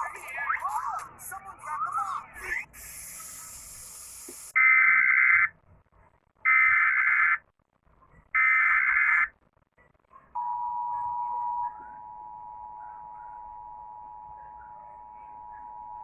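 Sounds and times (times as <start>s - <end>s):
hiss: 2.7s - 4.6s.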